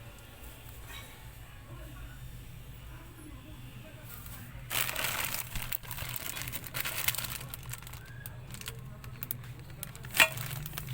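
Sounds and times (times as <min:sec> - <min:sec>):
rustling and crinkling: 0:04.1 - 0:10.9.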